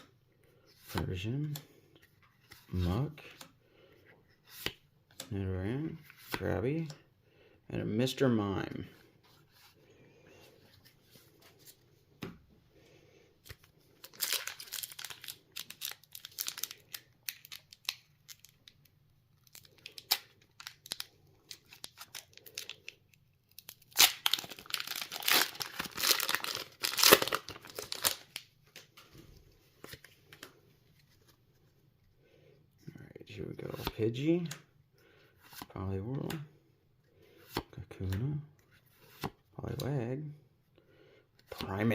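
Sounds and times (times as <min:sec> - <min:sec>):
foil wrapper tearing and crinkling: 0:14.1 - 0:18.6, 0:23.5 - 0:28.4.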